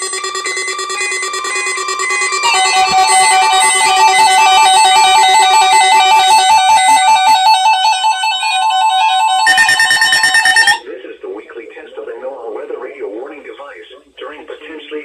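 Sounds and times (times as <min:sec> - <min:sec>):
electronic lead trilling: 0:00.0 - 0:10.8
held synth chords: 0:00.0 - 0:10.8.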